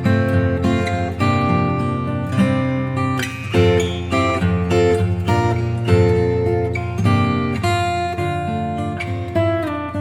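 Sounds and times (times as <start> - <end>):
acoustic guitar chords: 0.0 - 10.0.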